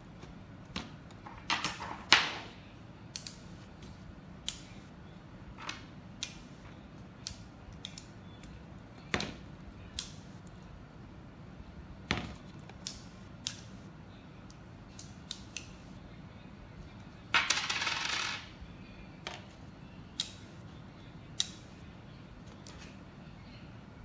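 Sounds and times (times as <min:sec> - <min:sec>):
magnetic metal pieces clicking: 0:03.1 - 0:03.5, 0:07.2 - 0:08.6, 0:09.9 - 0:10.6, 0:14.4 - 0:15.8, 0:21.3 - 0:21.6.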